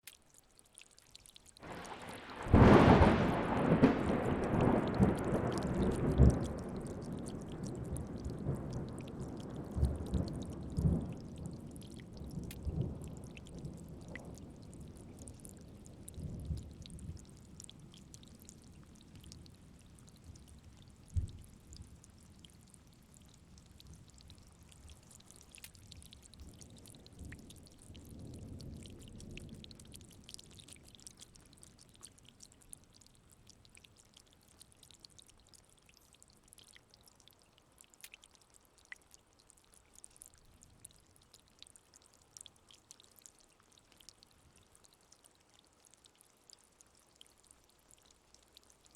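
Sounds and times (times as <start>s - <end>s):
rain drips and patter: 0.0s - 48.9s
low thunder rumbling: 1.6s - 14.8s.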